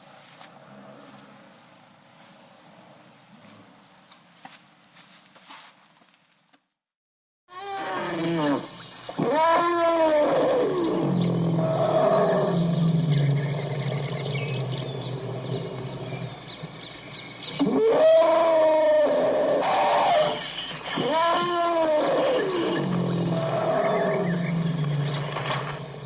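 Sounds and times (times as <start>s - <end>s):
elephants calling: 7.5s - 26.0s.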